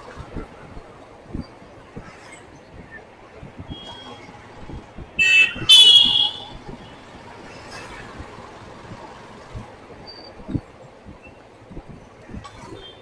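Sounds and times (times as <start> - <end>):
road traffic noise: 0.0 - 13.0
vehicle horn honking: 5.2 - 6.5.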